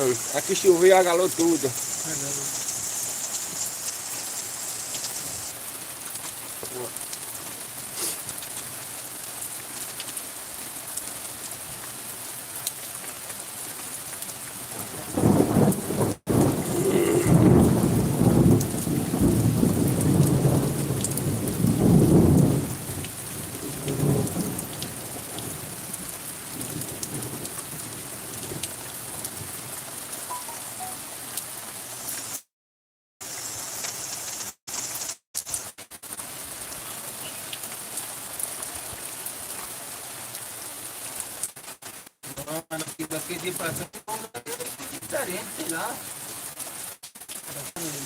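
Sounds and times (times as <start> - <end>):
rain falling: 0.0 - 32.4, 33.2 - 48.0
rolling thunder rumble: 14.8 - 22.8.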